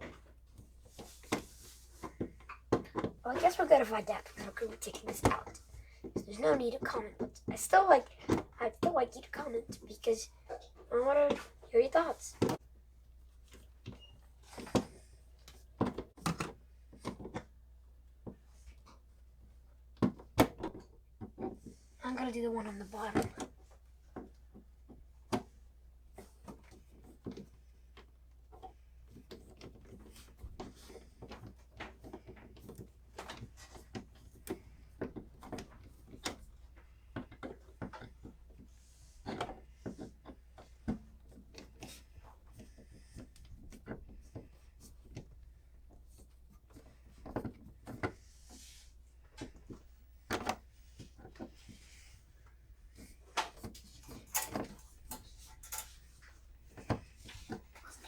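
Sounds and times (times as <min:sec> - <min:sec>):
screwdriver clicking and scraping: 0:54.0 - 0:56.0.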